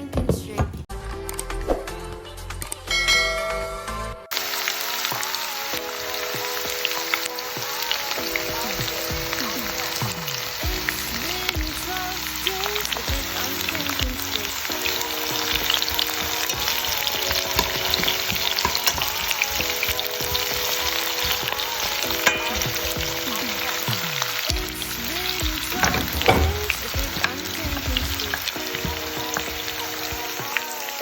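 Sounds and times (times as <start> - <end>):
food sizzling in a pan: 4.3 - 31.0
stirring in a pan: 7.6 - 30.6.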